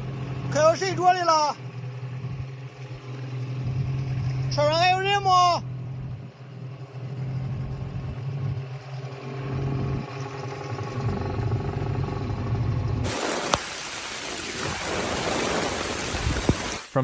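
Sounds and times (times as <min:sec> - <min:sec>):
vehicle engine humming: 0:00.0 - 0:14.9
rushing water: 0:13.0 - 0:17.0.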